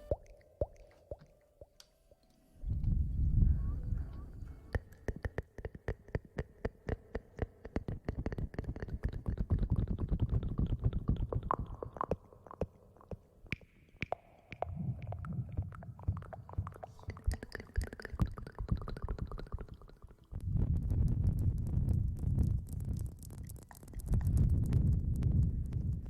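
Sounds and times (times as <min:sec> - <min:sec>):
low rumble: 0:02.6 - 0:04.8, 0:20.4 - 0:23.4, 0:24.1 - 0:26.0.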